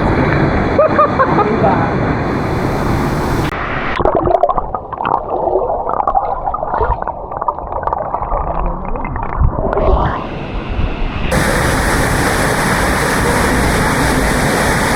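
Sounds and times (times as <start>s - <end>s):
waterfall hiss: 2.3s - 3.8s, 11.3s - 14.9s
underwater gurgling and bubbling: 2.3s - 14.9s.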